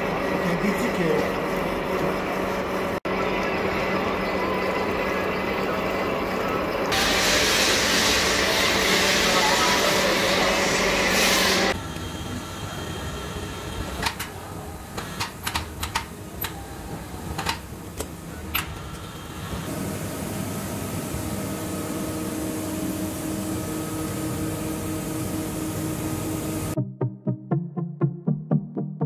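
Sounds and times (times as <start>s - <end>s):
loud noisy machine running: 0.0s - 15.3s.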